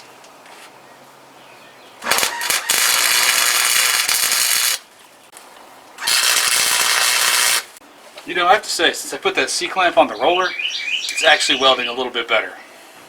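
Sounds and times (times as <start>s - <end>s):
wire-feed welder crackling and hissing: 2.0s - 7.8s.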